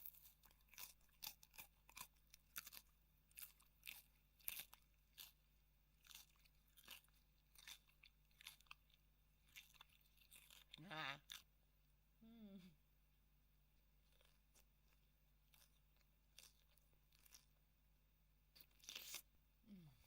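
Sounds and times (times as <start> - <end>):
bell pepper crunching when chewed: 0.0 - 11.5, 14.0 - 17.6, 18.5 - 19.3.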